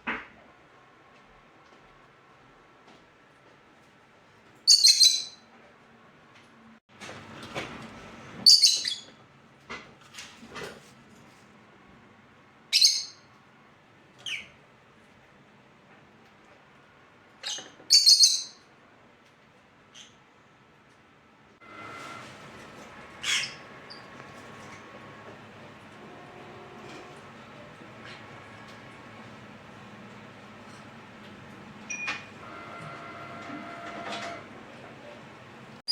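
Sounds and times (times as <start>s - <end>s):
parrot shrill calls: 4.7s - 5.4s, 23.2s - 24.1s.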